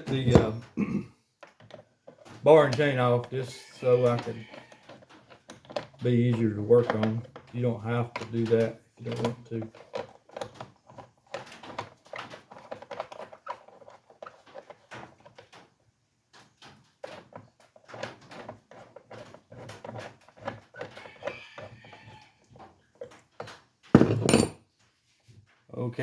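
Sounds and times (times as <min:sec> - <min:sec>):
hands and tools clattering on chainsaw parts: 0:00.0 - 0:15.8, 0:23.0 - 0:24.6.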